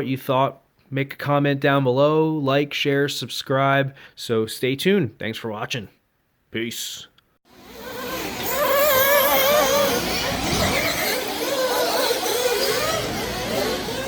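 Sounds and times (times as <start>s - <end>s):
electric motor whining: 7.6s - 14.0s.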